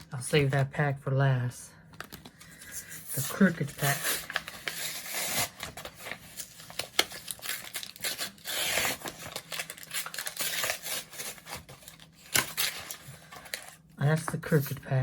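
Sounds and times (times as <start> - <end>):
foil wrapper crinkling and tearing: 2.0 - 13.8.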